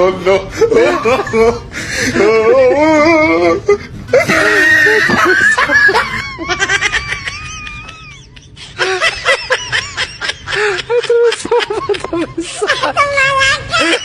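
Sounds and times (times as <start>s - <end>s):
person laughing: 0.5s - 14.0s.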